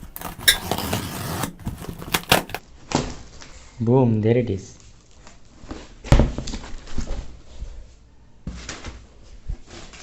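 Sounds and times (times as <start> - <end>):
box being handled: 0.0 - 2.6.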